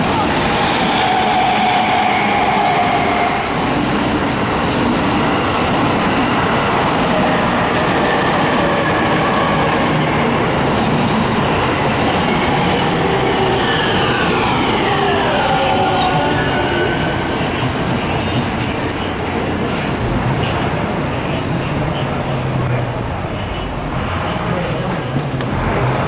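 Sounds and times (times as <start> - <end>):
train wheels rumbling on rails: 0.0 - 26.0.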